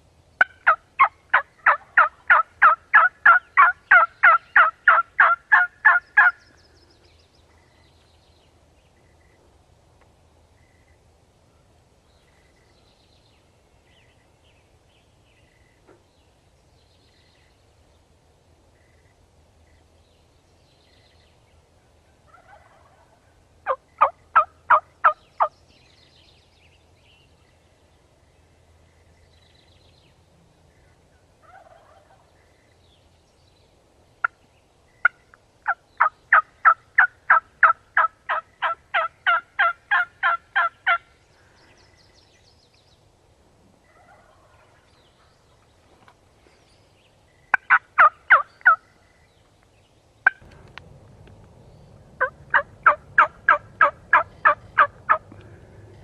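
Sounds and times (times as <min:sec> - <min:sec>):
turkey yelping: 0:00.4 - 0:06.4, 0:22.3 - 0:23.1, 0:23.7 - 0:25.2, 0:36.0 - 0:41.0, 0:43.9 - 0:44.8, 0:47.5 - 0:48.8, 0:52.2 - 0:55.2.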